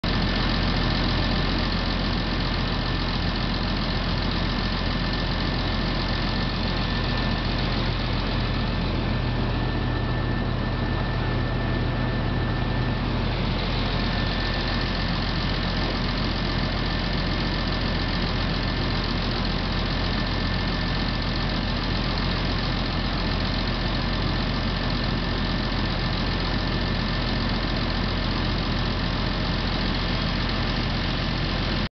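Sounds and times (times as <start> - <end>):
engine idling: 0.0 - 31.9
thin high whine: 5.4 - 17.8.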